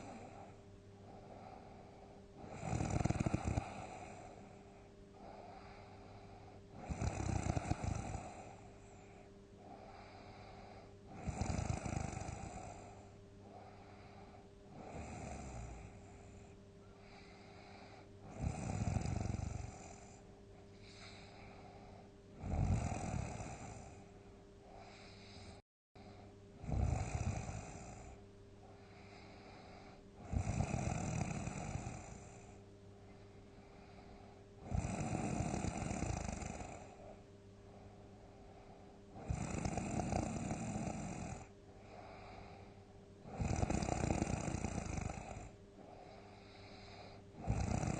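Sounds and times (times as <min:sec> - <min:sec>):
quiet breathing: 0:00.0 - 0:47.9
person snoring loudly: 0:02.4 - 0:04.3, 0:06.8 - 0:08.6, 0:09.8 - 0:13.0, 0:14.7 - 0:16.4, 0:17.6 - 0:20.2, 0:22.4 - 0:24.0, 0:26.6 - 0:28.2, 0:30.2 - 0:32.6, 0:34.6 - 0:37.0, 0:39.2 - 0:42.4, 0:43.2 - 0:45.6, 0:46.3 - 0:47.9.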